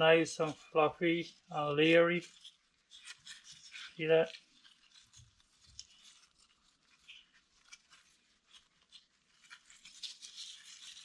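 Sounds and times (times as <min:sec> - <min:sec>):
soft rustling and crackling: 0:00.0 - 0:11.0.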